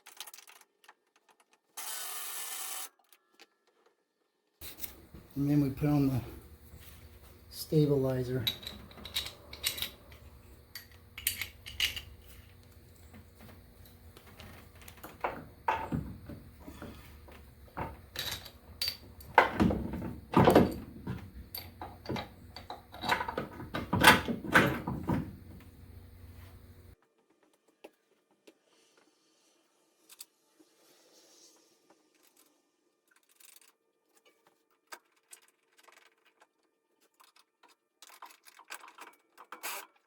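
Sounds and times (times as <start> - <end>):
metal tools clinking and knocking: 7.5 - 12.5, 14.2 - 17.0, 17.7 - 25.4.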